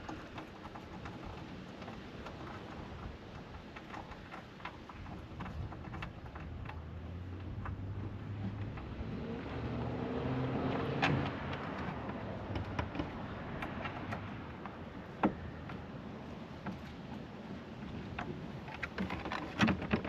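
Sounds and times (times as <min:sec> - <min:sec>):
vehicle passing by: 0:06.9 - 0:14.6.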